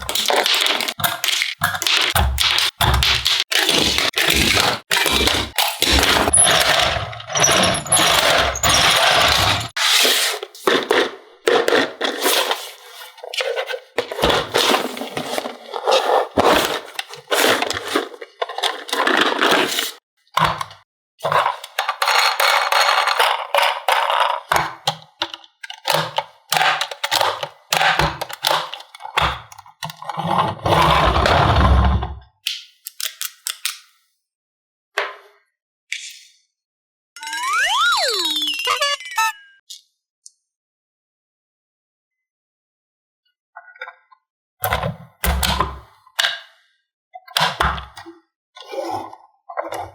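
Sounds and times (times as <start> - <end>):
plastic pieces clicking: 0.0 - 6.3
toys and packaging handled: 0.0 - 20.0, 21.2 - 24.5.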